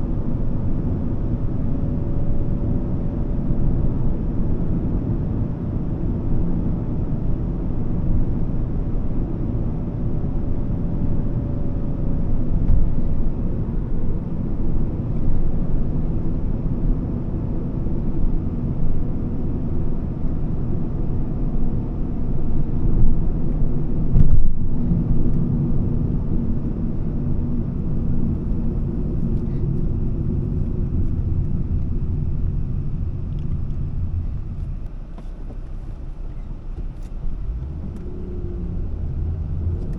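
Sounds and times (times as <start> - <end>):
car engine rumble from cabin: 0.0 - 39.9
tyre noise while driving: 33.5 - 38.2.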